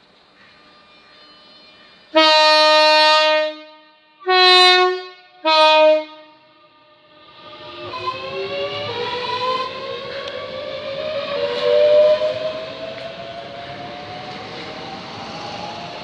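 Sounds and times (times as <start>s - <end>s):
two-tone train horn blasts: 0.2s - 12.7s.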